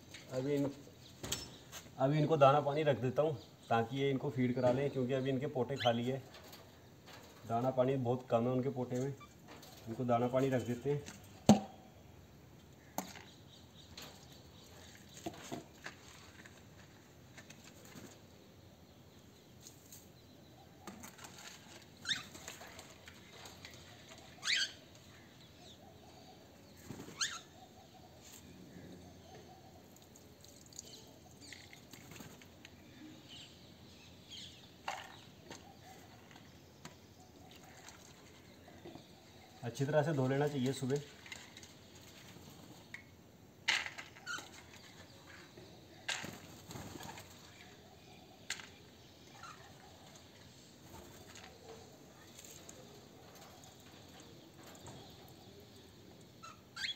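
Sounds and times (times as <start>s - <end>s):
dishes knocking in bird cage: 11.5s - 11.8s
birds fluttering wings: 14.9s - 18.3s, 26.8s - 27.4s, 31.8s - 32.6s, 46.1s - 47.7s.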